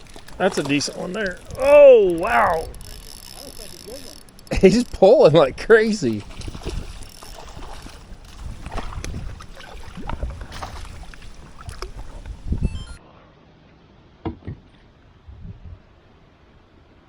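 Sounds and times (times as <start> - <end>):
water splashing: 0.0 - 13.0.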